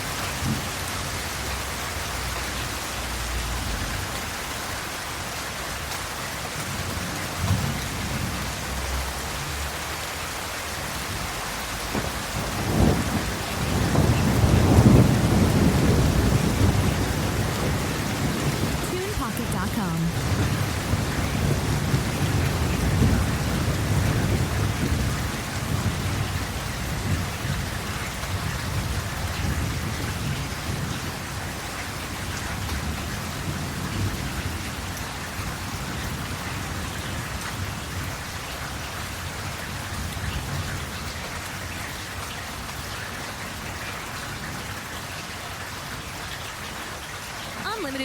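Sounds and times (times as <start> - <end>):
steady rain: 0.0 - 48.0
low thunder rumble: 11.2 - 18.9, 20.1 - 38.2.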